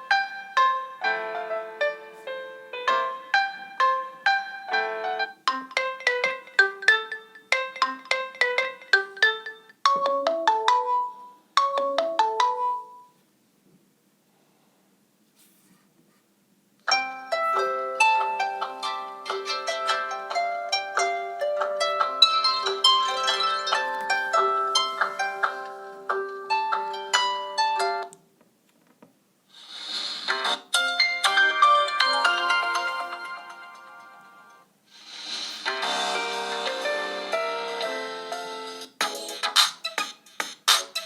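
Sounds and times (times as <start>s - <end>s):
ringtone melody: 0.0s - 13.2s, 16.9s - 28.1s, 30.3s - 41.0s
hiss: 29.5s - 30.3s, 34.9s - 35.7s.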